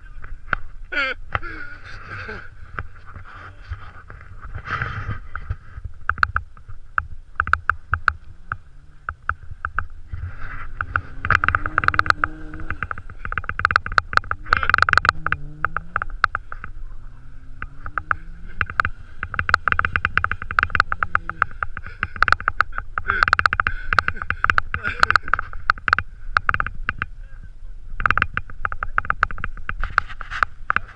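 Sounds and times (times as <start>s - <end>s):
sharp crackling clicks: 4.0s - 27.2s, 27.9s - 30.9s
car engine revving: 7.2s - 22.9s.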